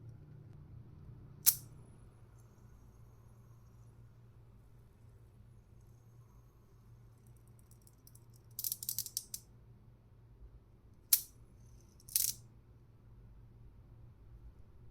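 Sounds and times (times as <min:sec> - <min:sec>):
metal fidget spinner clicking: 0:01.4 - 0:01.6, 0:07.6 - 0:09.4, 0:12.0 - 0:12.4.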